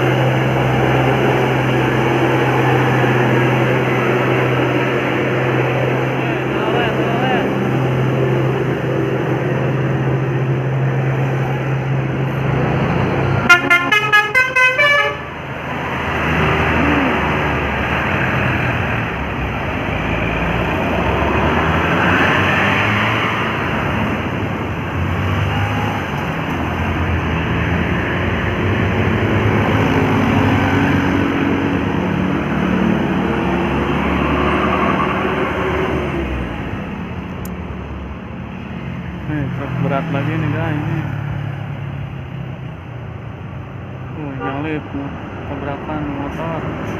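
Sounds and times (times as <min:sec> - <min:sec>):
heavy vehicle engines: 0:00.0 - 0:46.9
road traffic: 0:00.0 - 0:46.9
multi-tone musical bus horn: 0:13.4 - 0:15.4, 0:44.4 - 0:44.7.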